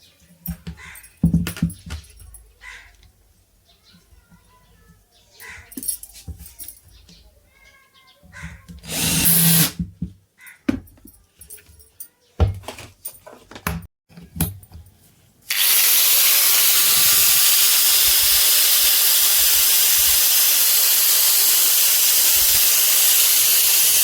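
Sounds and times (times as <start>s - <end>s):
loud steady hiss: 8.9s - 9.8s, 15.5s - 24.0s.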